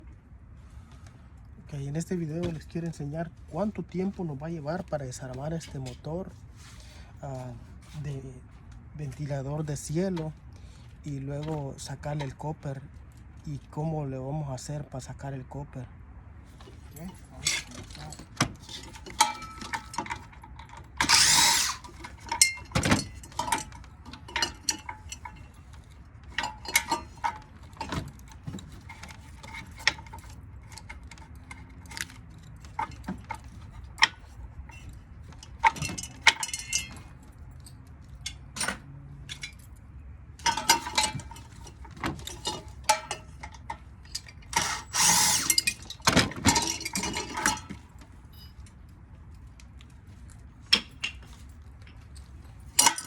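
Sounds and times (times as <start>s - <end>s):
metal rattling: 16.8s - 37.4s, 40.4s - 48.5s
metal parts clicking and clinking: 16.8s - 53.0s.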